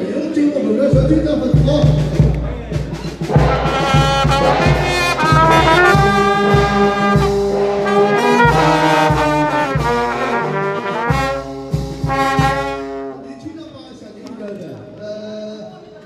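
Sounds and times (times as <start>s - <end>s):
steady low beat: 1.0s - 13.2s
brass band playing: 1.2s - 13.6s
trombone: 1.4s - 13.4s
trumpet: 1.4s - 13.7s.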